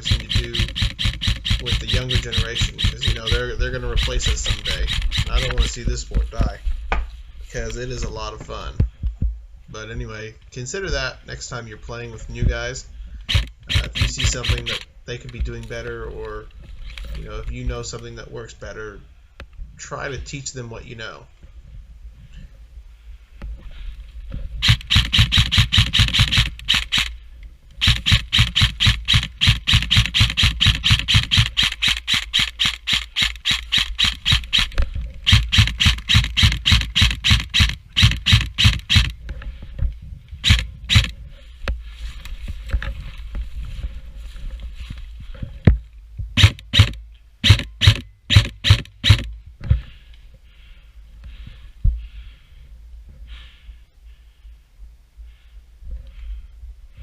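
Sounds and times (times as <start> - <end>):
airsoft gun firing: 0.0 - 5.7, 13.3 - 14.9, 24.6 - 27.2, 27.8 - 39.2, 40.4 - 41.1, 46.4 - 49.3.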